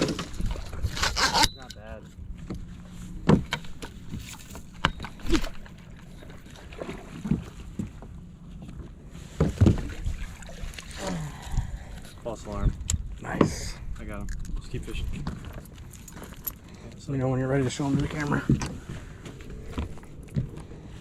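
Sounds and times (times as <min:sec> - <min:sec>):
wind rumbling on microphone: 0:11.3 - 0:16.0.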